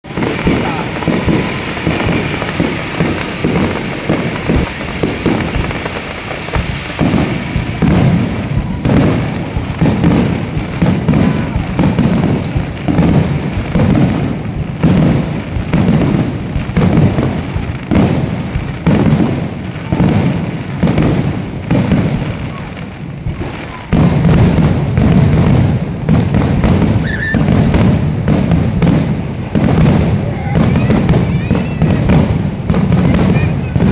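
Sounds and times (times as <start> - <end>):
fireworks bursts and booms: 0.0 - 33.9.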